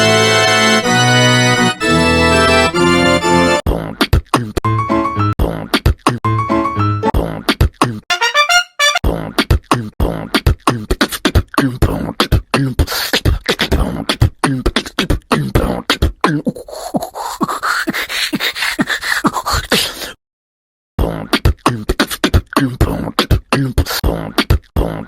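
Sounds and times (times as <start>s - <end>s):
rapid beatboxing: 3.7s - 4.6s, 5.4s - 6.2s, 9.0s - 19.9s, 21.0s - 25.0s.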